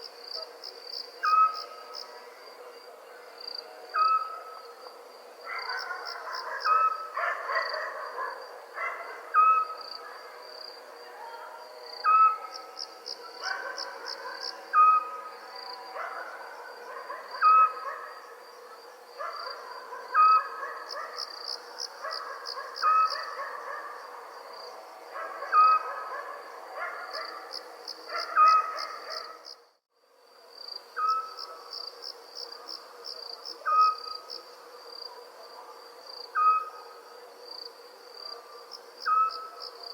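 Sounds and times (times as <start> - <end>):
crickets chirring: 0.0 - 39.9
distant dog calls: 5.4 - 10.4, 12.0 - 24.3, 25.1 - 29.5
pulsed insect trills: 30.5 - 35.1.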